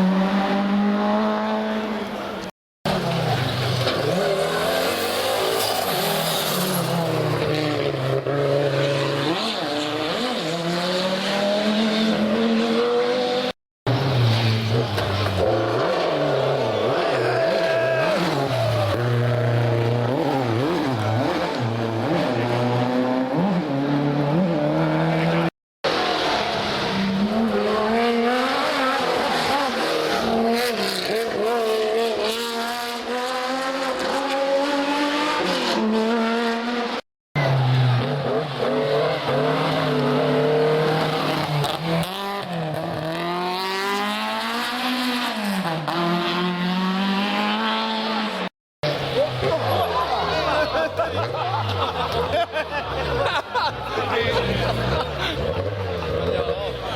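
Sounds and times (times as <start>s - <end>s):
rally car engines revving: 0.0s - 56.9s.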